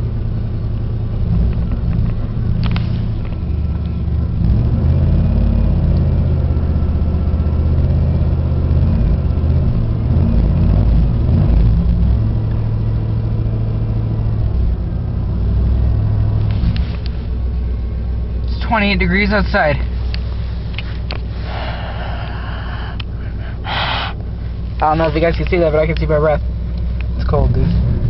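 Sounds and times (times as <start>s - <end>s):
car engine revving: 0.0s - 28.0s.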